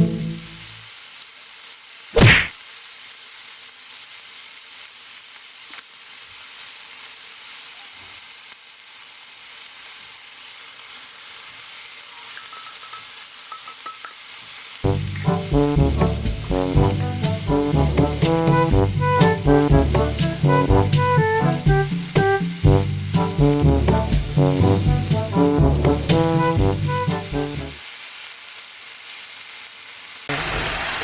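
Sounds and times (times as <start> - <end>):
music: 0.0 - 0.7, 14.8 - 27.8
chicken sizzling in a pan: 0.0 - 31.0.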